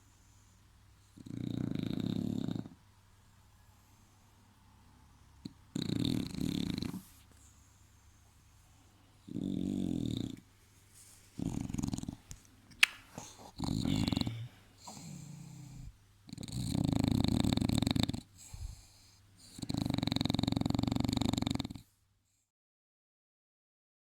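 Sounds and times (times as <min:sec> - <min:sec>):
dog snoring: 0:00.2 - 0:02.8, 0:05.4 - 0:08.1, 0:09.2 - 0:10.4, 0:11.4 - 0:12.3, 0:13.2 - 0:21.9.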